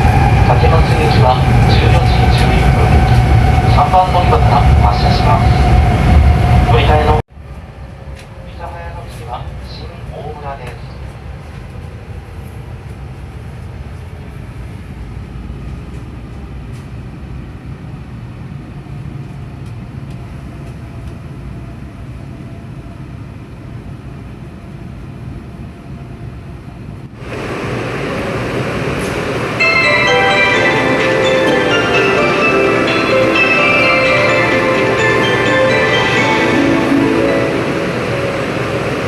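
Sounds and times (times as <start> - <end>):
train running low rumble: 0.0 - 39.0
bell-like melody: 29.6 - 39.0.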